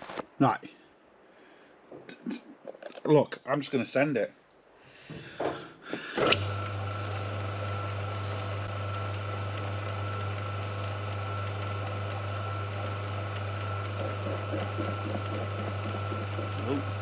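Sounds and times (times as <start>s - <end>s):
lathe switch click: 6.2s - 6.7s
lathe motor humming and whining: 6.2s - 17.0s.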